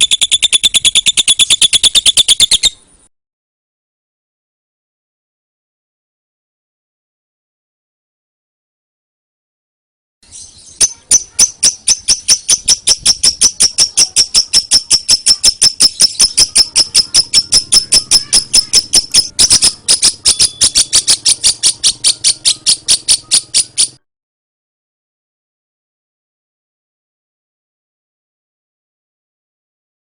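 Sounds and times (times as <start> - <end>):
lovebird chirping: 0.0 - 3.1, 10.2 - 24.0.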